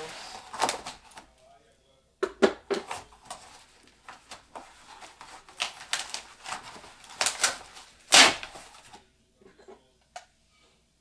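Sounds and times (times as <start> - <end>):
cardboard box being opened: 0.0 - 1.2, 2.9 - 9.0.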